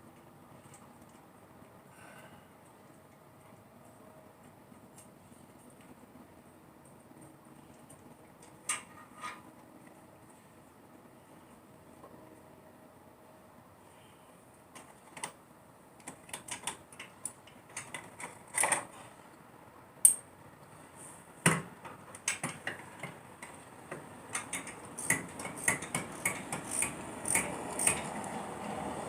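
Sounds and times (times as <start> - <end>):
socket ratchet clicking: 24.3 - 28.0.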